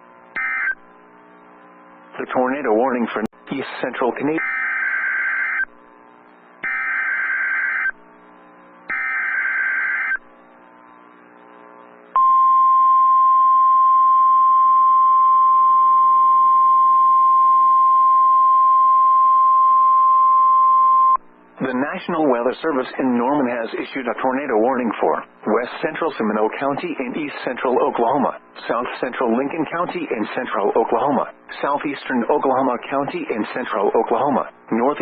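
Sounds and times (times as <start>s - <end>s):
single-pitch alarm tone: 0.4s - 0.8s, 6.6s - 8.0s, 8.9s - 10.2s, 12.2s - 21.2s.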